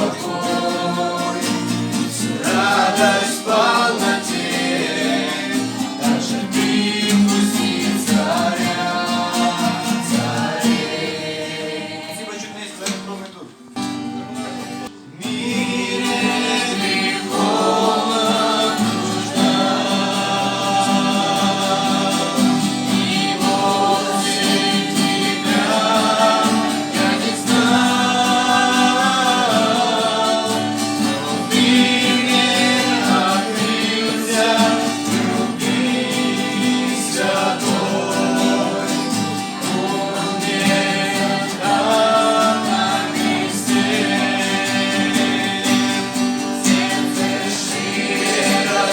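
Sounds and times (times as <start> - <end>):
several voices singing: 0.0 - 12.8, 14.9 - 48.9
guitar accompaniment: 0.0 - 48.9.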